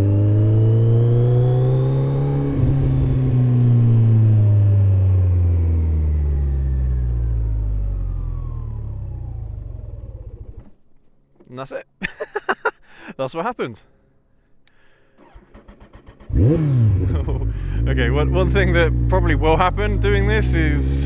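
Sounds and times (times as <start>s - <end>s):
motorcycle engine revving: 0.0s - 10.6s, 15.2s - 21.0s.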